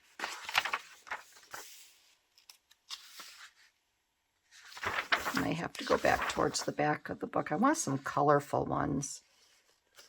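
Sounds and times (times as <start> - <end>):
book pages rustling: 0.0 - 3.8, 4.5 - 6.8.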